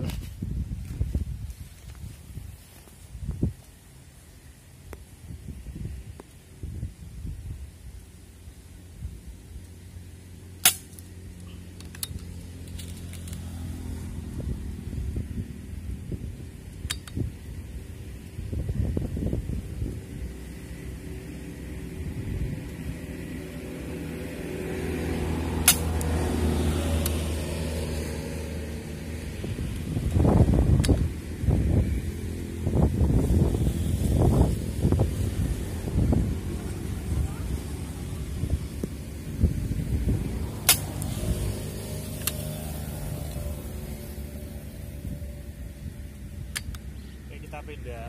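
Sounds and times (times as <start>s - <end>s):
wind on microphone: 0.0s - 3.7s, 4.9s - 8.0s, 13.8s - 47.2s
vehicle engine running: 8.2s - 48.0s
sharp clicks: 46.5s - 47.0s.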